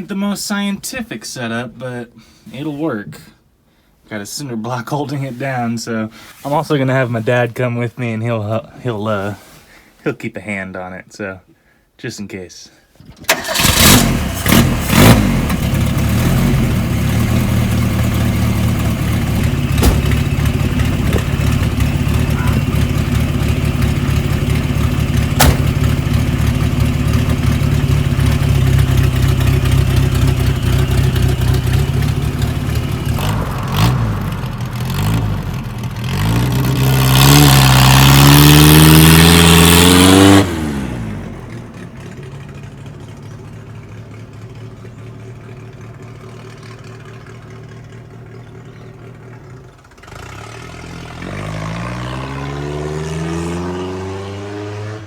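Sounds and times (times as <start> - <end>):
car engine revving: 13.3 - 42.5, 50.0 - 55.0
tyres spinning: 17.2 - 38.3.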